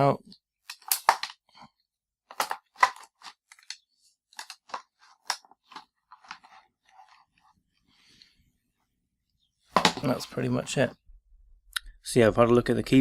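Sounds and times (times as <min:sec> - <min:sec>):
batteries removed from plastic compartment: 0:00.7 - 0:01.4, 0:02.3 - 0:07.2.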